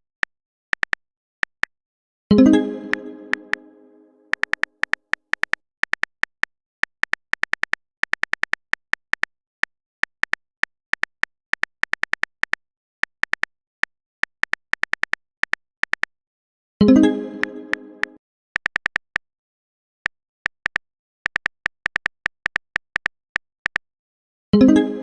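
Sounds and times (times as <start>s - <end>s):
phone keyboard tapping clicks: 0.1s - 1.7s, 4.3s - 13.5s, 14.2s - 16.1s, 17.4s - 19.2s, 20.5s - 23.8s.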